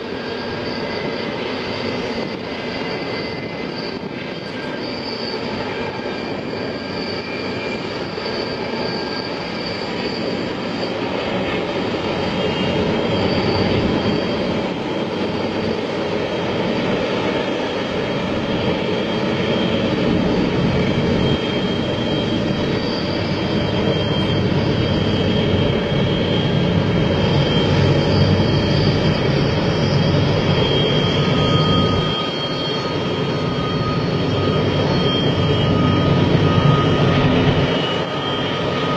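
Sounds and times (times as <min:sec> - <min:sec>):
train rumbling past: 0:17.5 - 0:38.9.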